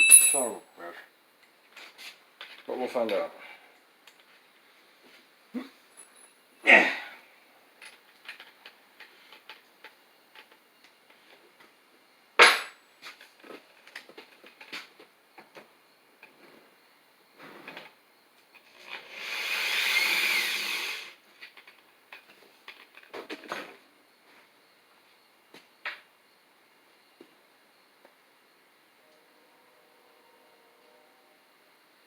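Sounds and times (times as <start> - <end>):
power drill running: 19.0 - 21.2.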